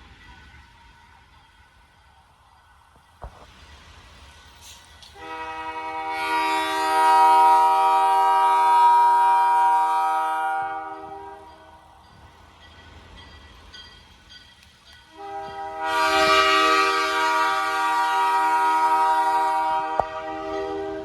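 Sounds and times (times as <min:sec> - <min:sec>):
locomotive air horn blast: 0:05.2 - 0:11.5, 0:15.1 - 0:21.0.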